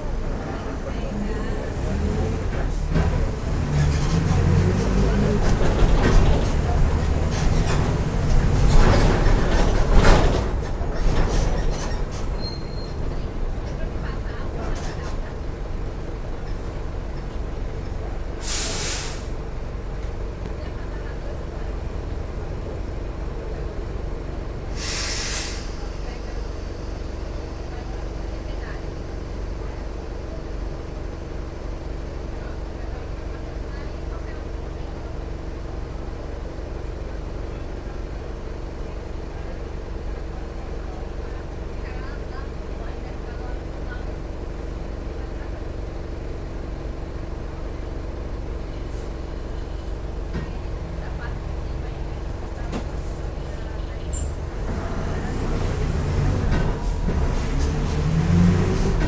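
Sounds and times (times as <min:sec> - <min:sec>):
bus diesel engine running: 0:00.0 - 0:59.0
compressed air hiss: 0:18.4 - 0:19.3, 0:24.8 - 0:25.8.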